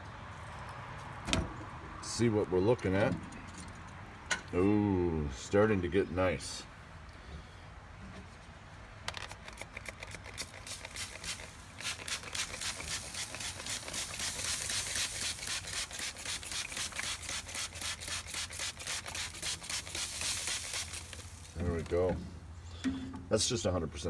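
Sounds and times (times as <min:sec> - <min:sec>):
spray bottle squirting: 0:09.1 - 0:21.6.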